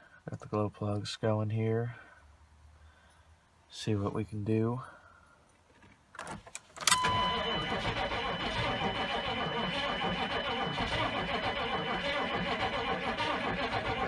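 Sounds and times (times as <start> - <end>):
engine cranking with whine: 6.8 - 14.0
starter motor clunk: 6.8 - 14.0.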